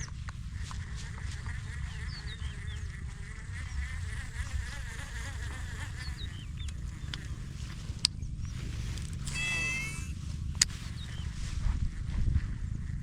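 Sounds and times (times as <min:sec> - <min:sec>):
insects buzzing: 0:00.0 - 0:13.0
bird chirps: 0:09.3 - 0:10.1.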